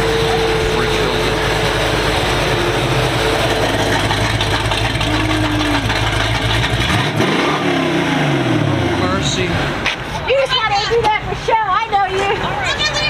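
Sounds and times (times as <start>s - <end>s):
engine revving: 0.0s - 10.0s
engine rumbling at idle: 0.0s - 12.2s.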